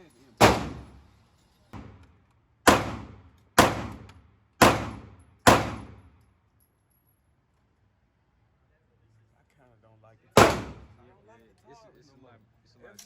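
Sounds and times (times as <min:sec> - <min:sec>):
pistol shots echoing: 0:00.4 - 0:01.0, 0:02.7 - 0:06.0, 0:10.4 - 0:11.0.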